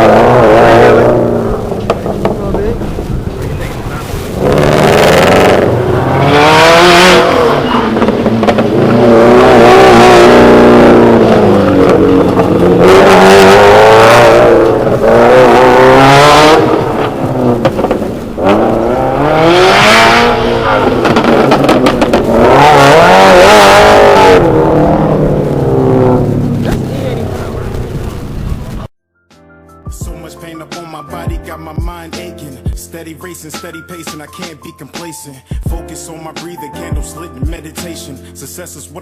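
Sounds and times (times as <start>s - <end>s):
car engine revving: 0.0s - 28.8s.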